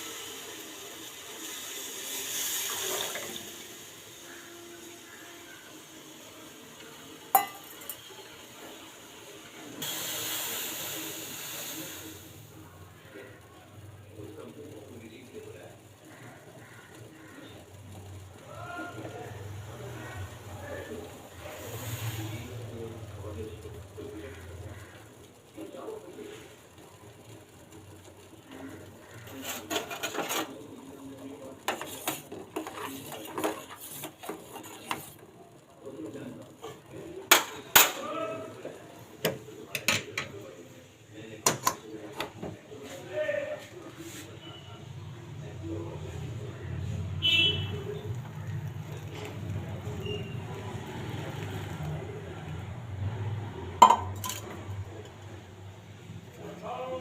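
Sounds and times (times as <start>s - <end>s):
kitchen utensils clinking: 7.3s - 8.1s, 29.3s - 30.7s, 31.6s - 35.2s, 37.3s - 38.1s, 53.8s - 55.2s
kitchenware clinking: 7.3s - 8.1s, 29.3s - 30.6s, 37.3s - 38.1s, 41.4s - 42.5s, 53.8s - 54.6s.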